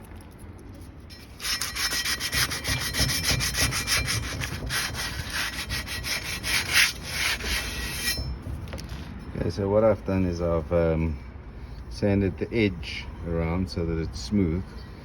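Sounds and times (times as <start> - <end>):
sandpaper scratching metal rim: 1.1 - 8.3.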